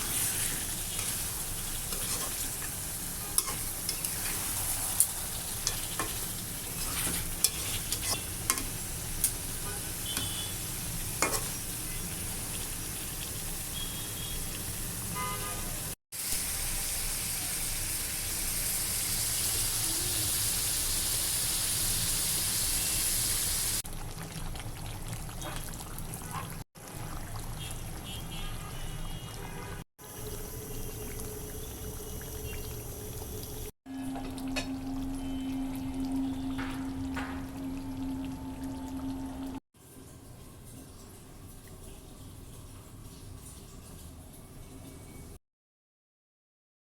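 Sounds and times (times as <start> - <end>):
spatula scraping a pan: 0.0 - 8.8, 11.2 - 11.6
meat sizzling in a pan: 0.0 - 15.1, 16.2 - 23.8.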